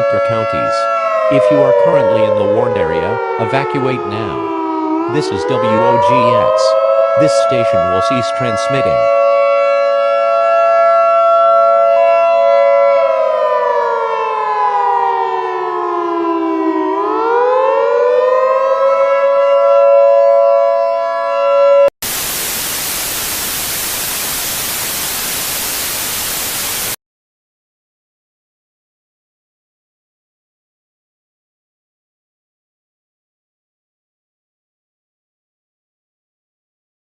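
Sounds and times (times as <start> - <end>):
civil defense siren chord: 0.0 - 27.0
tv static hiss: 22.0 - 27.0.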